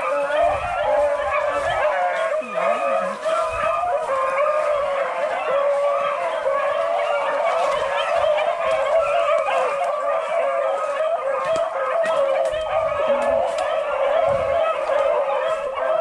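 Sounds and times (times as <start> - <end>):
dogs baying in chorus: 0.0 - 16.0.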